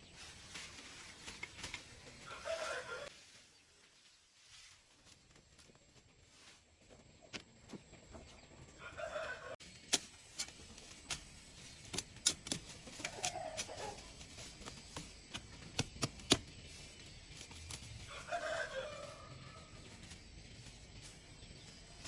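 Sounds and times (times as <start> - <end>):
chickens calling: 1.2 - 3.1, 7.7 - 9.6, 12.8 - 15.3.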